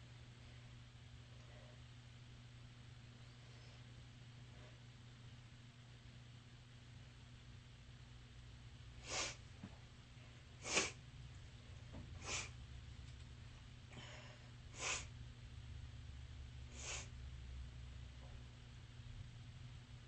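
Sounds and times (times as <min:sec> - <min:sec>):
low electrical hum: 0:00.0 - 0:20.0
person sneezing: 0:10.6 - 0:11.0, 0:12.2 - 0:12.5.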